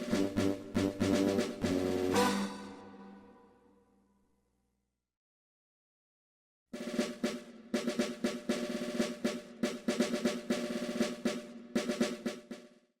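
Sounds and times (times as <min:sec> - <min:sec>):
driving drum beat with snare rolls: 0:00.0 - 0:02.2, 0:06.8 - 0:12.8.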